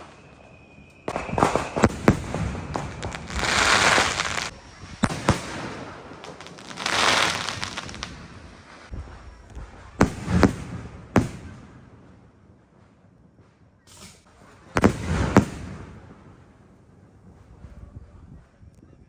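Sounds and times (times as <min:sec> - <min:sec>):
firework shells bursting: 0:00.0 - 0:12.2.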